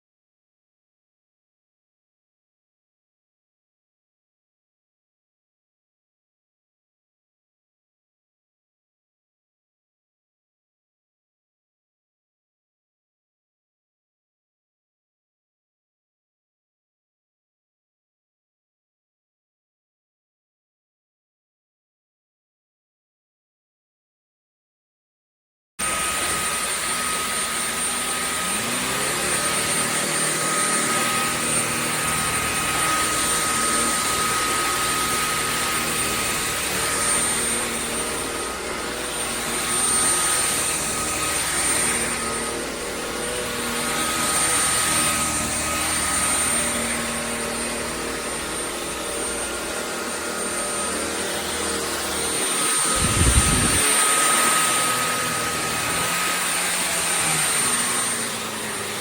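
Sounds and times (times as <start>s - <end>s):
stick vacuum running: 25.8s - 59.0s.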